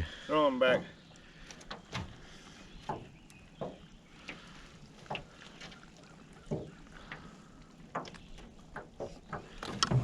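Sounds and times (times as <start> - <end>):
knocks and bumps in a boat: 7.9 - 10.0.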